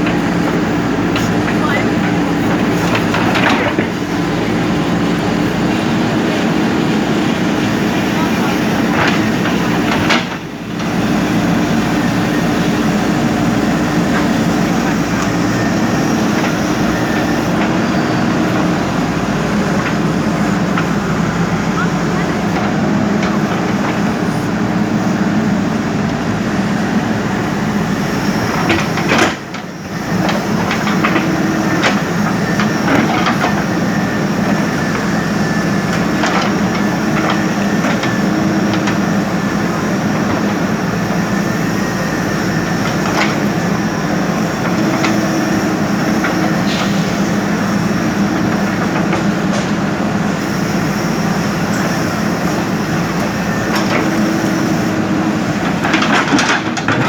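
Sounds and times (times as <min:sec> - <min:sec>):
machine knocks and clanks: 0:00.0 - 0:04.9, 0:08.9 - 0:11.0, 0:28.2 - 0:39.2, 0:55.6 - 0:57.0
diesel engine under load: 0:00.0 - 0:57.0.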